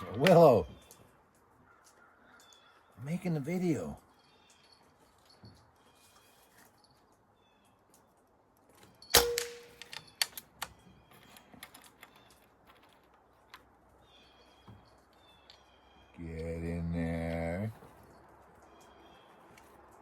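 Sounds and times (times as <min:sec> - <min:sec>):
air rifle shot: 0:09.2 - 0:09.8.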